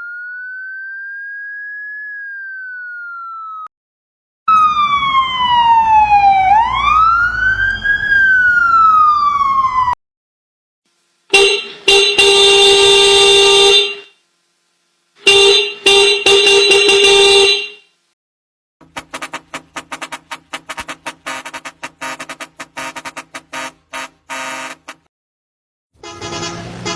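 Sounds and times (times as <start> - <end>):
siren wailing: 0.0 - 3.7, 4.5 - 10.0
vehicle horn blasts: 11.3 - 14.2, 15.2 - 17.8, 18.8 - 25.1, 26.0 - 26.9.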